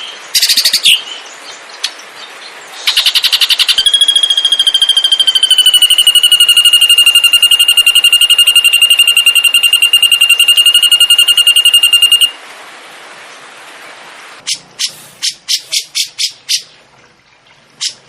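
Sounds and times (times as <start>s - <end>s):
songbird trilling: 2.8s - 12.4s
faint hiss: 12.4s - 16.0s.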